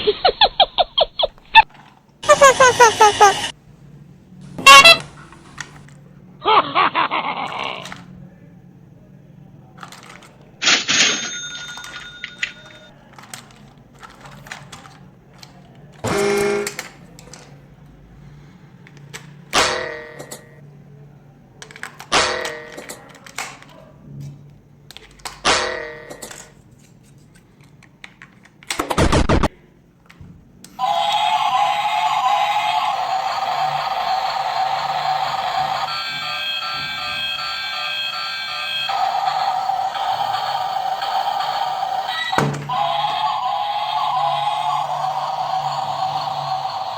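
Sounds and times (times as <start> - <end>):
electronic rings and tones: 35.6 - 39.0.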